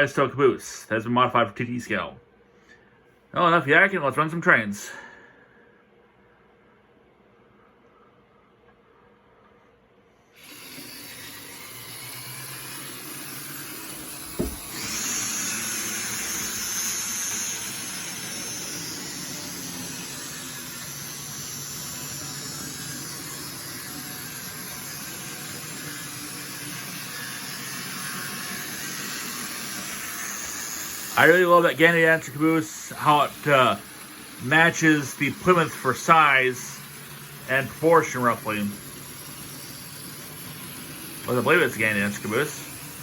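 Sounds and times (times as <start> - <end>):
model train motor whine: 10.4 - 43.0.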